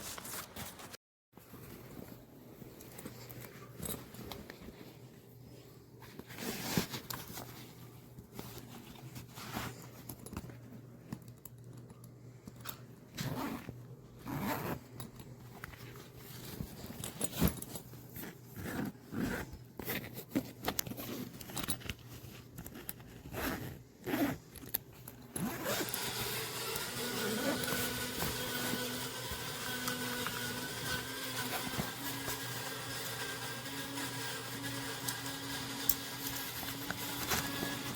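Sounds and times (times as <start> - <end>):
bag rustling: 0.0 - 10.6, 13.1 - 24.4
backpack zippers pulled: 13.1 - 14.9, 17.2 - 20.2, 22.6 - 24.4, 25.3 - 37.9.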